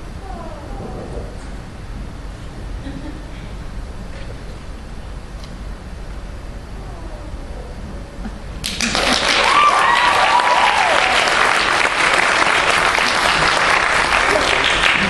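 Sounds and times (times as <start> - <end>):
audience applause: 8.6 - 15.0
audience cheering: 8.7 - 15.0.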